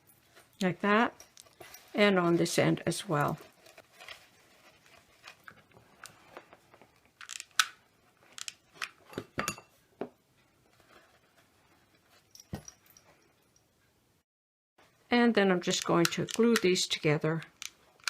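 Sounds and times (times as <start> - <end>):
burlap rustling and crinkling: 0.2 - 7.0.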